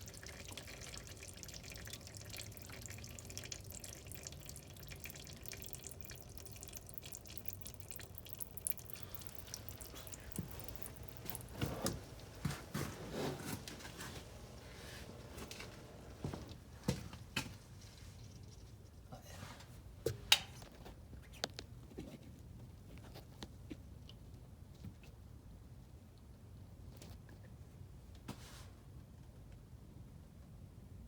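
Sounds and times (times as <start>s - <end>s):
liquid splashes: 0.0s - 15.7s
oil trickling into drain pan: 0.0s - 19.0s.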